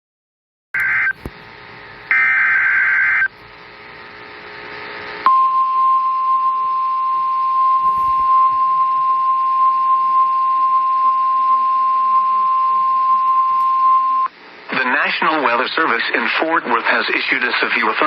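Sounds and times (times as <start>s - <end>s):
radio hiss: 0.8s - 5.3s, 6.6s - 8.4s, 14.3s - 18.0s
steady high alarm tone: 2.1s - 3.4s, 5.2s - 14.3s.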